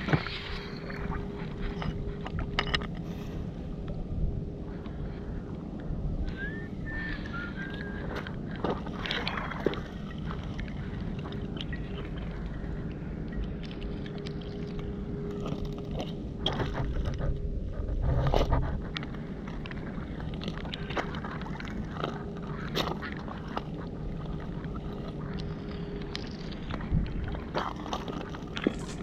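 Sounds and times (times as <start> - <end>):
faint steady hum: 0.0 - 29.0
stones clicking and scraping: 1.6 - 3.0, 27.5 - 29.0
wind buffeting microphone: 14.9 - 22.4, 23.6 - 29.0.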